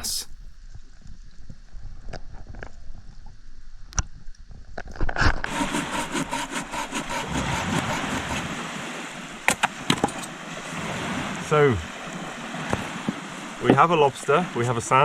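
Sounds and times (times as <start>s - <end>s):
sea water rushing: 5.5s - 15.0s.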